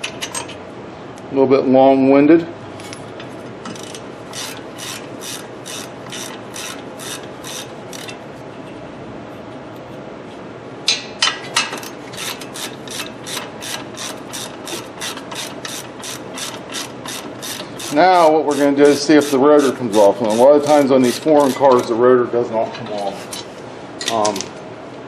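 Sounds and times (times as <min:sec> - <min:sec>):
ratchet wrench clicking: 0:03.8 - 0:08.2, 0:12.2 - 0:21.8.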